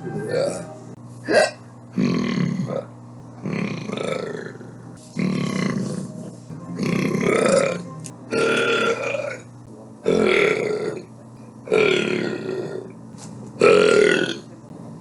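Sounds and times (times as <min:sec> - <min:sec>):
person burping: 0:01.2 - 0:04.6, 0:06.8 - 0:09.4, 0:10.1 - 0:11.0, 0:11.6 - 0:12.9, 0:13.6 - 0:14.4.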